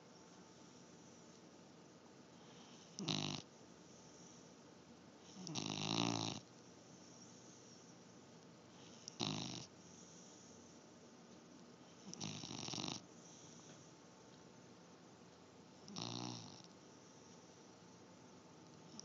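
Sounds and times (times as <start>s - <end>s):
loud snoring: 2.6s - 3.4s, 5.3s - 6.4s, 8.9s - 9.7s, 12.0s - 13.1s, 15.9s - 16.7s.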